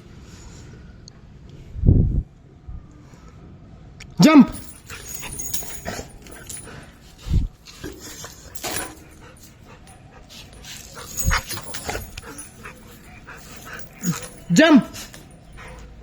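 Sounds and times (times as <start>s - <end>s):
dog making small sounds: 10.3s - 16.0s.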